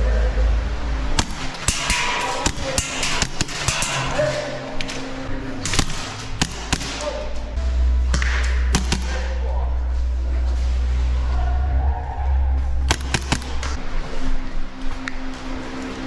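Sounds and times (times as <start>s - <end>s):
background music: 0.0s - 16.0s
airsoft guns firing: 1.2s - 7.4s, 8.1s - 9.3s, 12.9s - 13.8s
pellets striking: 1.2s - 9.4s, 12.9s - 13.8s.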